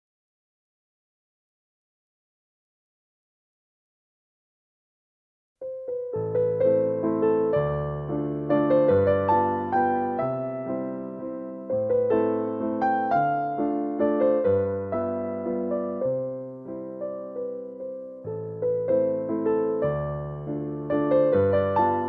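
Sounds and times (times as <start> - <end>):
slow piano piece: 5.6 - 22.0.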